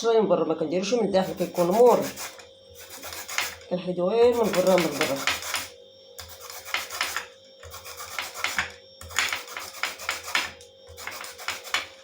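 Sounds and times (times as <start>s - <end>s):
lemon rasping on a grater: 1.2s - 3.6s, 4.3s - 10.4s, 11.0s - 11.9s.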